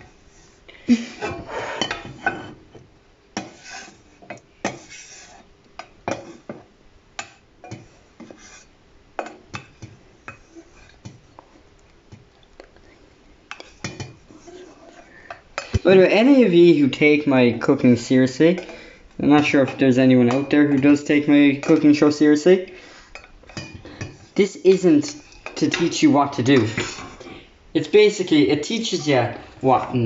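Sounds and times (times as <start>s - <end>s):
spatula scraping a pan: 0.0s - 2.7s, 3.4s - 11.3s, 13.5s - 15.8s, 22.6s - 27.4s, 28.6s - 29.6s.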